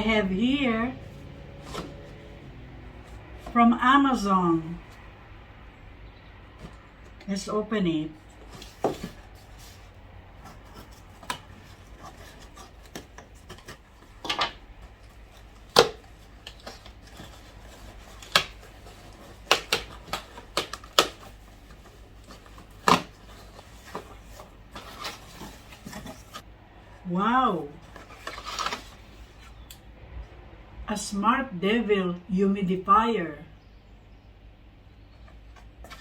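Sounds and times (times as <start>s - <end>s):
cardboard packaging scraping: 0.0s - 3.6s, 8.2s - 26.5s, 27.8s - 29.7s.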